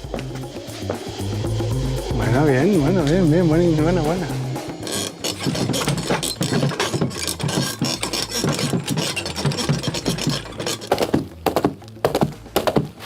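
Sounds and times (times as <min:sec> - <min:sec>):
rubbing scraping and rattling: 0:00.0 - 0:13.0
sharp knocks: 0:10.8 - 0:13.0.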